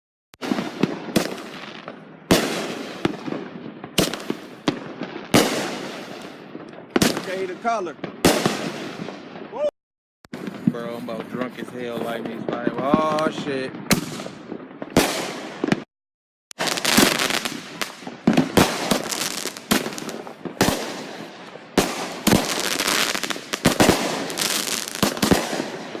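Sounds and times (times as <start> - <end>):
fireworks bangs with crackling: 0.4 - 9.7, 10.3 - 15.9, 16.5 - 26.0.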